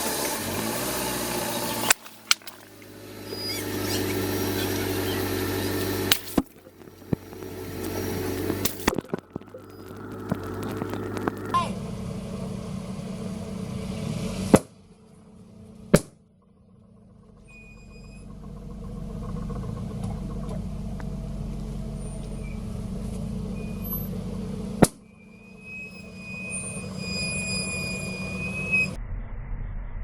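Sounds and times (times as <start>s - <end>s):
car engine running: 0.0s - 29.0s
sharp loud cracks: 0.5s - 3.0s.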